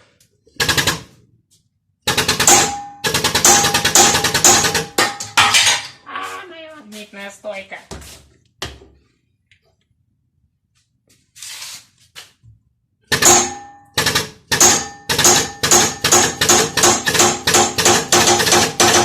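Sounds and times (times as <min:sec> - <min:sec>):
hammer clanging on metal: 0:02.3 - 0:06.0, 0:13.1 - 0:19.0.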